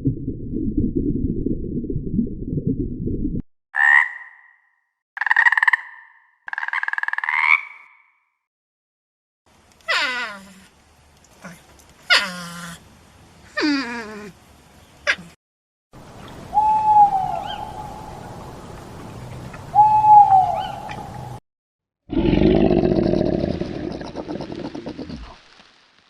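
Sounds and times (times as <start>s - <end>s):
steady background hiss: 16.0s - 21.4s.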